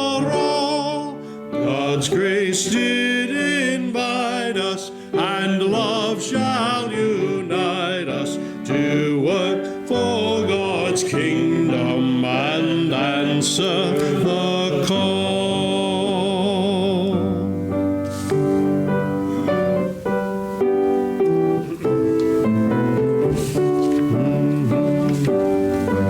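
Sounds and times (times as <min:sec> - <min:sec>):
congregation singing a hymn: 0:00.0 - 0:26.0
keyboard playing: 0:08.8 - 0:26.0.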